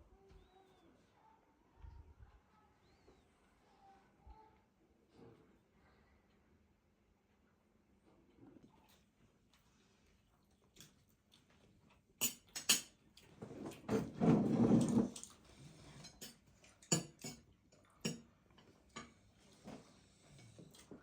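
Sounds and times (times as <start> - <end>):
dishes and utensils clinking: 12.2 - 13.0, 13.6 - 19.2.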